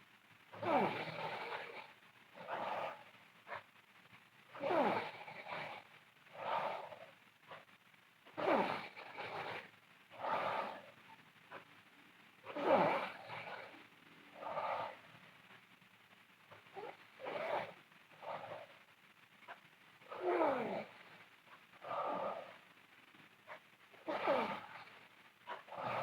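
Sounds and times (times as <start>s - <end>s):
girl snoring loudly: 0.6s - 3.0s, 4.5s - 7.1s, 8.4s - 10.9s, 12.5s - 13.8s, 16.8s - 18.7s, 20.1s - 21.0s, 21.8s - 22.6s, 24.0s - 25.0s, 25.7s - 26.0s.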